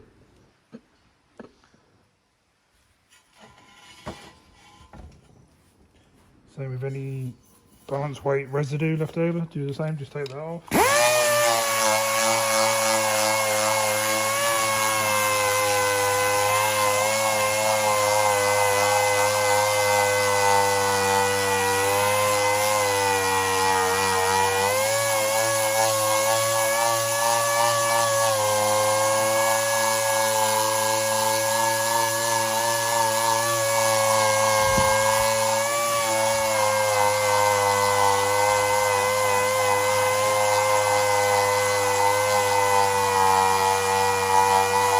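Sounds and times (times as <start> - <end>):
power tool whining on metal: 10.7 - 44.9.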